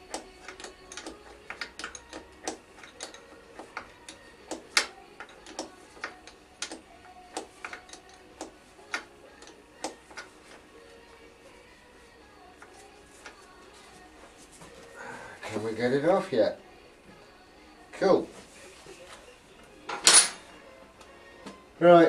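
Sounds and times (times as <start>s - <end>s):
hand tools clicking on metal: 0.0s - 10.6s.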